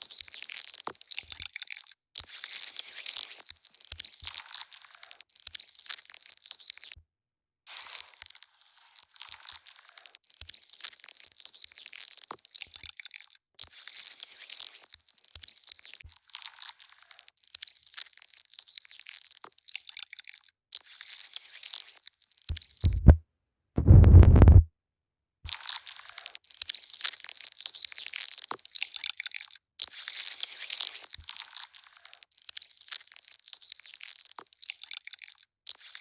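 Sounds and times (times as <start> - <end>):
heavy thumps: 22.9 - 23.2, 23.8 - 24.7.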